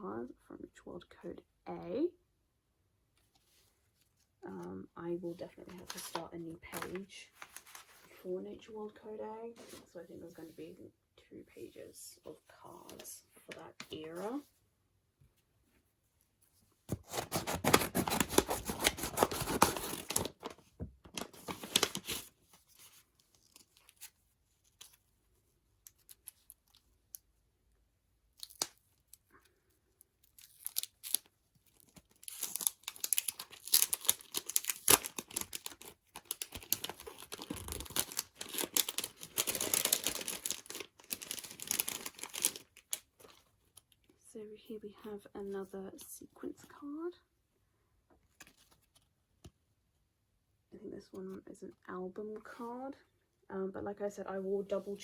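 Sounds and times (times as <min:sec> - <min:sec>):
packaging ripping and rustling: 0:16.9 - 0:22.4, 0:30.3 - 0:43.4.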